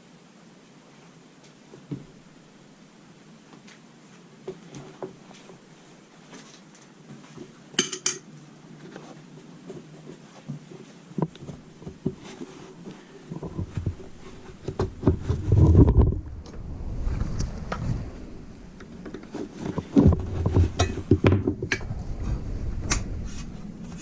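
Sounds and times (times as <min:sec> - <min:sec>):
metal tools clicking and knocking: 0:07.8 - 0:08.3
low rubbing and knocking: 0:13.3 - 0:24.0.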